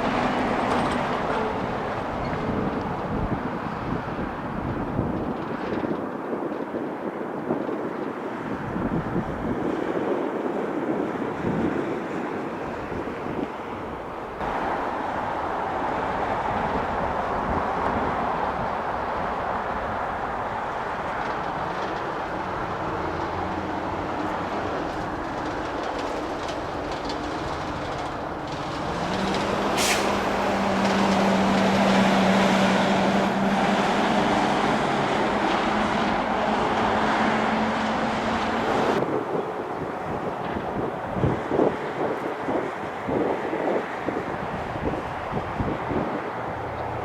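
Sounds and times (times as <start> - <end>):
jet engines rumbling: 8.0 - 47.0.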